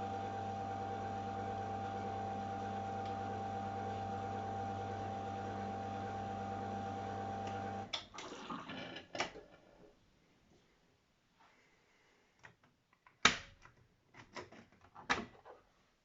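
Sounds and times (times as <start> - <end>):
washing machine humming: 0.0 - 8.5.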